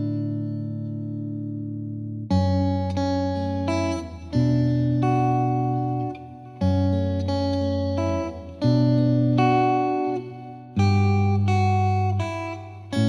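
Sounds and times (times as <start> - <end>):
plucked guitar chords: 0.0 - 13.0.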